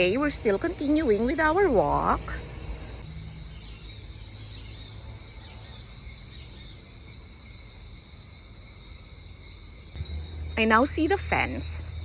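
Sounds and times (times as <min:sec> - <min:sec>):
insects buzzing trill: 0:00.0 - 0:12.0
low rumble: 0:10.0 - 0:12.0.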